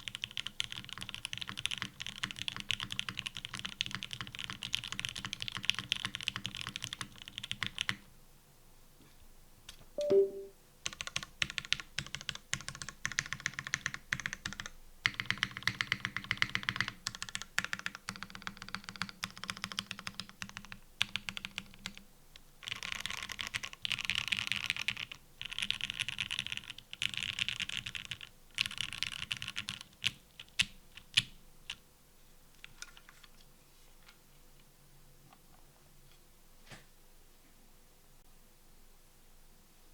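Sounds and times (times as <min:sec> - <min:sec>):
fast typing on mechanical keyboard: 0:00.0 - 0:08.0, 0:10.8 - 0:22.0, 0:22.6 - 0:31.8.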